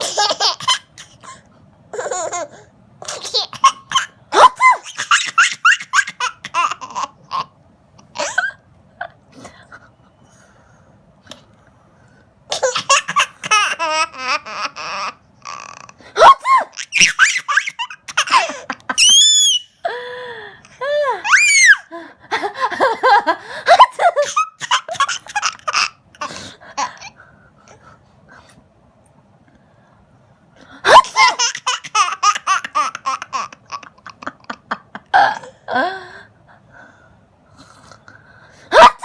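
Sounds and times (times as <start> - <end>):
high squeals of laughter: 16.2 - 19.9, 20.9 - 21.9, 30.8 - 32.0
laughter: 22.1 - 24.4, 34.1 - 35.3.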